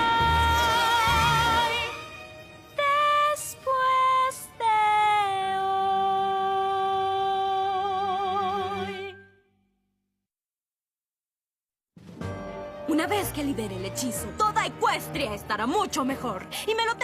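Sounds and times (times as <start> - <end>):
woman singing with vibrato: 0.0 - 2.1, 2.8 - 9.2.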